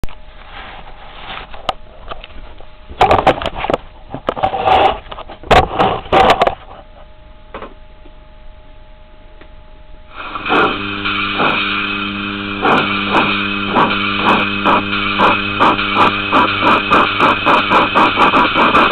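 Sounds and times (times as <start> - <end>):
steady hum: 0.0 - 18.9
short noisy bursts: 10.1 - 18.9
steam locomotive chuffing: 10.2 - 11.9, 12.6 - 18.9.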